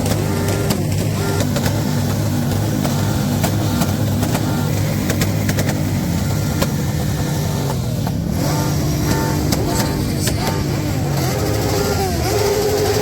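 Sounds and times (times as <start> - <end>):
sharp clicks: 0.0 - 8.2
motorcycle engine idling: 0.0 - 13.0.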